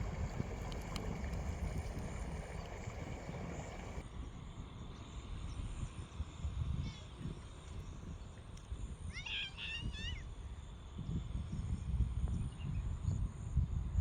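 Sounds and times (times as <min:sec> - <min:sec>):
wind buffeting microphone: 0:00.0 - 0:04.0.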